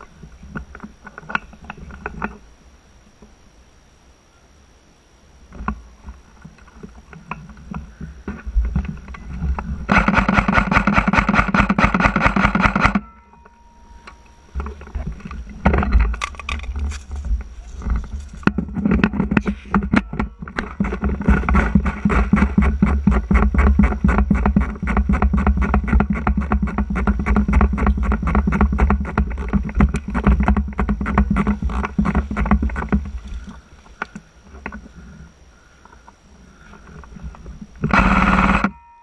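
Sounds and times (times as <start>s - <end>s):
airsoft gun full-auto bursts: 9.9s - 13.1s, 37.9s - 38.8s.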